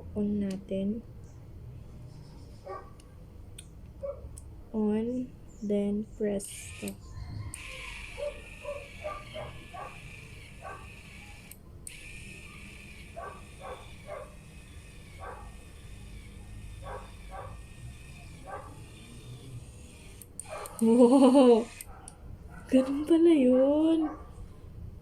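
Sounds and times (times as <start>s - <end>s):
faint high-pitched hum: 0.0s - 25.0s
small dog yipping and whimpering: 7.0s - 10.0s.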